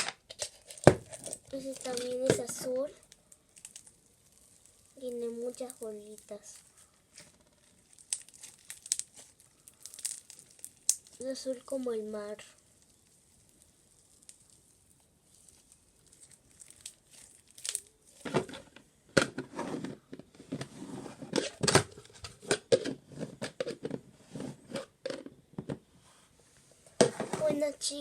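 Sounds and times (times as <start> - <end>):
slime crackling and popping: 0.0 - 18.4.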